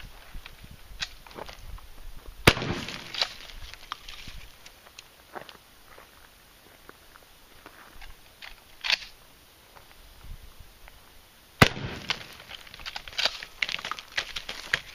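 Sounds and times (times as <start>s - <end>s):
shotgun shot: 2.4s - 3.4s, 11.6s - 12.4s
small sharp crackles: 2.5s - 5.1s, 11.6s - 14.9s.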